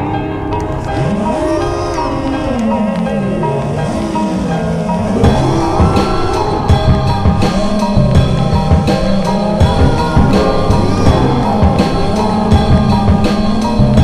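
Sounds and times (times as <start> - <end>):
rock music: 0.0 - 14.0
sustained electronic tones: 0.9 - 14.0
steady drum beat: 5.2 - 14.0.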